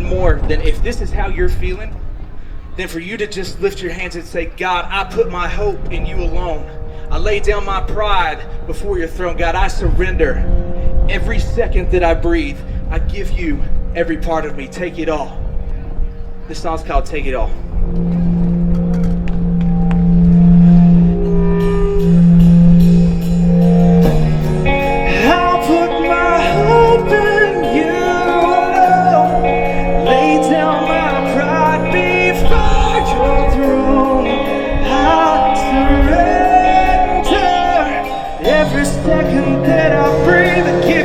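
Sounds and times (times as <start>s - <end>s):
man singing: 4.2s - 10.5s, 24.9s - 41.0s
electric guitar chords: 4.4s - 41.0s.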